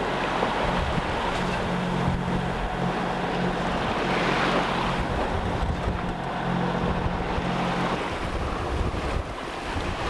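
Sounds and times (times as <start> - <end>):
boat engine humming: 0.0 - 10.0
water rushing along hull: 0.0 - 10.0
wind on microphone: 4.9 - 10.0.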